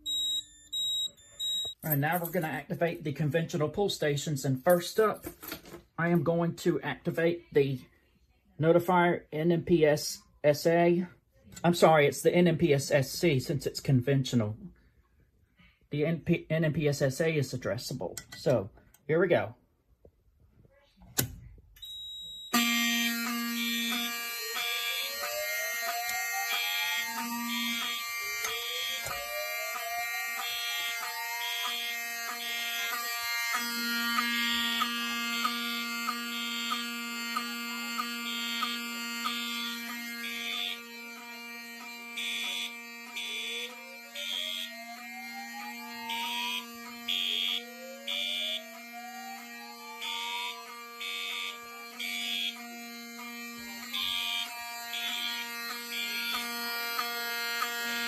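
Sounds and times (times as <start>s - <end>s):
high-pitched fire alarm horn pulses: 0.0s - 2.0s, 21.8s - 58.0s
steady alarm tone: 0.0s - 2.0s, 21.8s - 58.0s
rising whoop alarm sweep: 23.1s - 58.0s.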